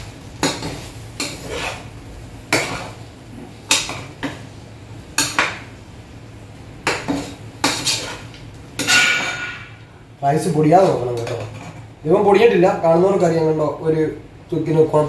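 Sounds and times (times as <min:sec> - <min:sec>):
spoon scraping a pan: 0:00.4 - 0:03.0, 0:06.8 - 0:09.8, 0:11.2 - 0:11.9.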